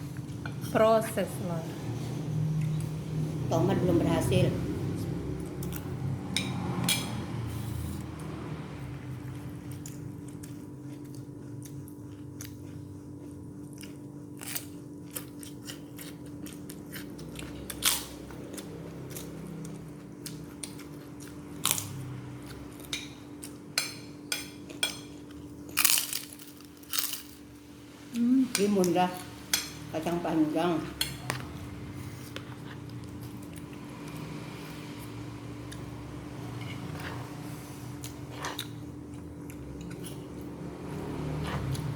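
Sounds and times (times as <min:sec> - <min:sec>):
steady low hum: 0:00.0 - 0:41.9
person crunching and chewing: 0:09.3 - 0:23.6, 0:24.7 - 0:27.6, 0:38.0 - 0:40.5.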